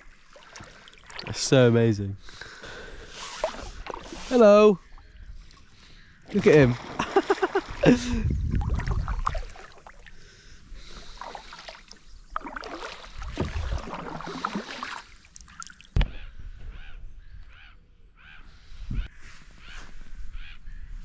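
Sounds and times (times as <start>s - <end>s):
kayak paddle splashing in water: 0.0s - 1.3s, 3.1s - 4.5s, 6.3s - 16.0s.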